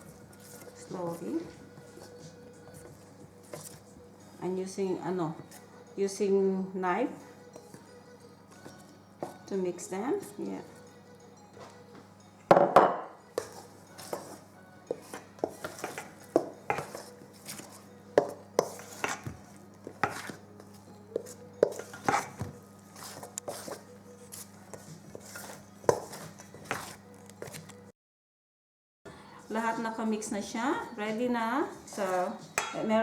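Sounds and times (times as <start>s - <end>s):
knife scraping and knocking bowl: 0.0s - 3.9s, 12.5s - 27.8s.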